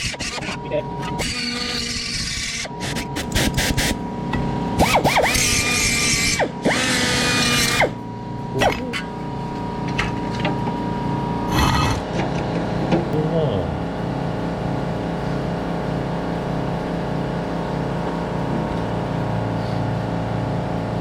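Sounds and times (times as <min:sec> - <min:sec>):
small electric power tool spinning: 0:00.0 - 0:04.0, 0:04.8 - 0:08.0, 0:11.5 - 0:12.1.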